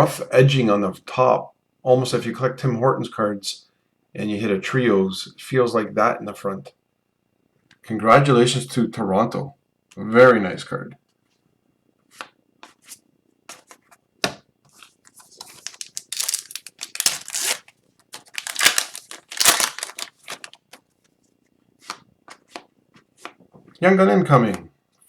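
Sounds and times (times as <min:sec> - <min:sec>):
cards rustling and clicking: 0:14.7 - 0:20.9
wrapper tearing and crinkling: 0:15.2 - 0:20.8.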